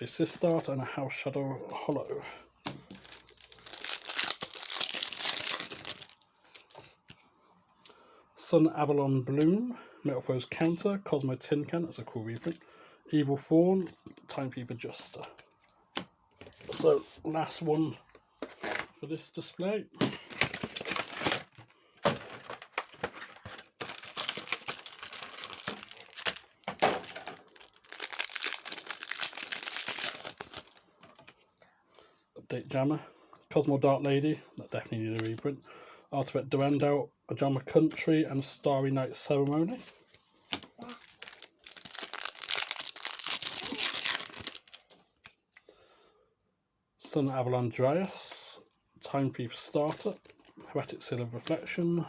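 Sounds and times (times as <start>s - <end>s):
foil wrapper crinkling: 22.3s - 30.8s, 40.8s - 45.0s.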